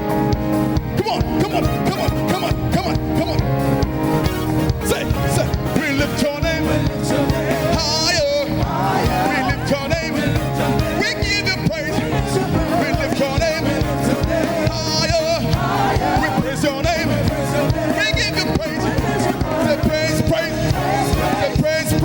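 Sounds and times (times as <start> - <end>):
band playing a steady beat: 0.0 - 22.0.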